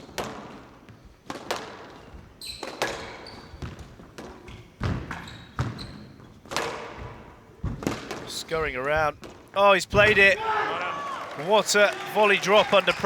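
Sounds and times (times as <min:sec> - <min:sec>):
squash ball hitting rackets and walls: 0:00.0 - 0:10.6
court shoes squeaking: 0:00.0 - 0:13.0.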